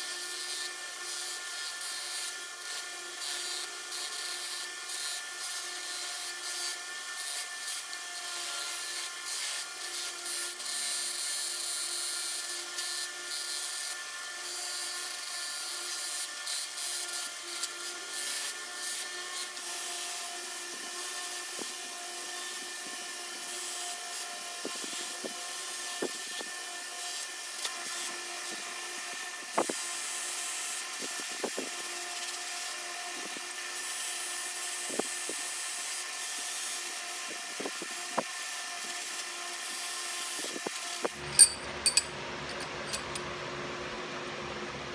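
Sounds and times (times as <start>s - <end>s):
power tool grinding: 40.8s - 43.2s.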